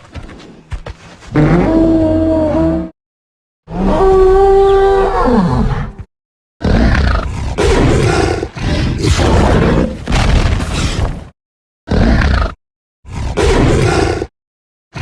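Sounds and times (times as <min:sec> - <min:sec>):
rough creature roar: 0:01.4 - 0:02.9, 0:06.6 - 0:10.0, 0:11.9 - 0:14.3
creature bellow: 0:01.4 - 0:03.0, 0:03.7 - 0:06.0, 0:13.2 - 0:14.3.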